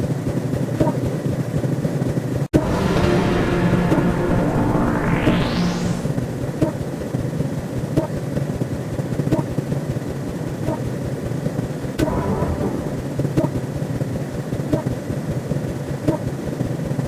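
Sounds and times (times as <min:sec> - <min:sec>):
electronic rising sweep: 0:02.6 - 0:07.3, 0:12.0 - 0:13.6
rumbling drone: 0:02.6 - 0:07.5, 0:12.0 - 0:13.8.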